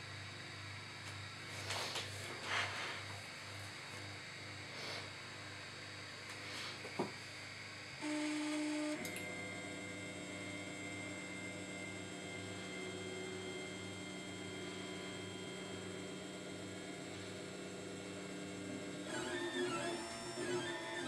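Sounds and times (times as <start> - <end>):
printer motors whining and humming: 0.2 - 21.0
louder motor tone: 8.0 - 21.0.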